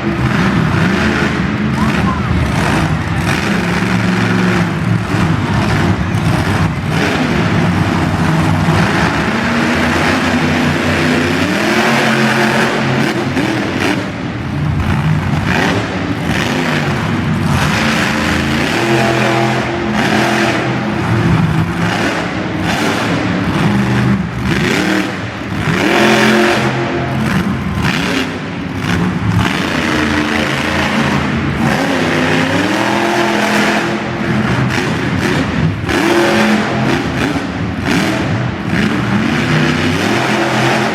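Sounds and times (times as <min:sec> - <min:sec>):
monster truck engine revving: 0:00.0 - 0:40.9.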